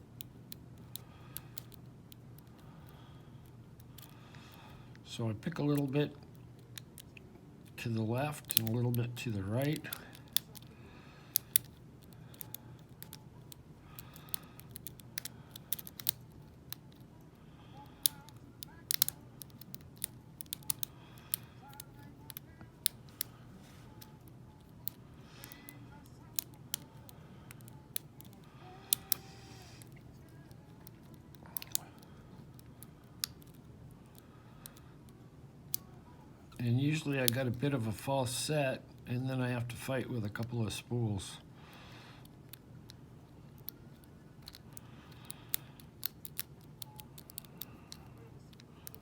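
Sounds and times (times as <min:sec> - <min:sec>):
low steady hum: 0:00.0 - 0:49.0
lock pick clicking in lock: 0:11.3 - 0:17.0, 0:18.0 - 0:23.2, 0:43.5 - 0:49.0.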